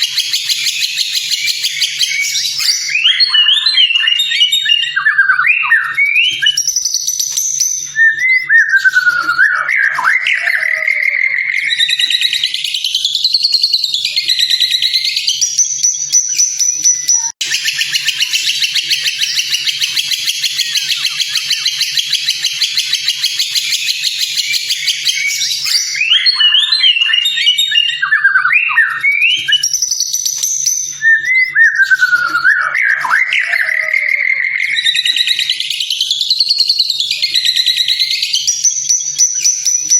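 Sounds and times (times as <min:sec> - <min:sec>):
bird whistling song: 0:00.0 - 0:39.9.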